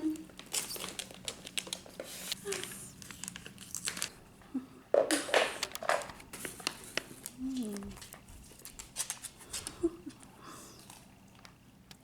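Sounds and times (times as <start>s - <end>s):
treat bag crinkling: 0.0s - 4.3s, 5.1s - 10.2s.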